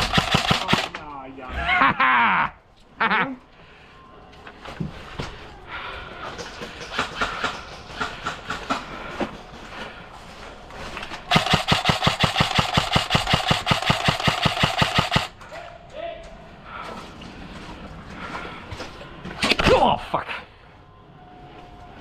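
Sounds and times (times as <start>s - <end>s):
airsoft rifle full-auto burst: 0.0s - 1.0s, 11.3s - 15.4s.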